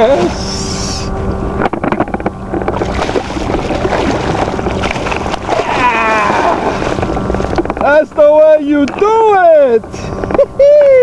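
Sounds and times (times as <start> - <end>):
wind buffeting microphone: 1.3 - 11.0.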